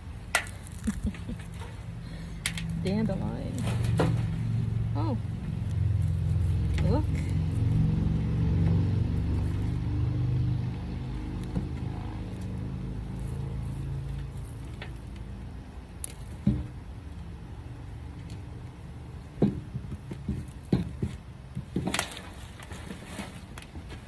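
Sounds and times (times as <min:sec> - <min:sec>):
knocks and scrapes of soil: 0:00.0 - 0:24.0
low rumble: 0:00.8 - 0:14.4.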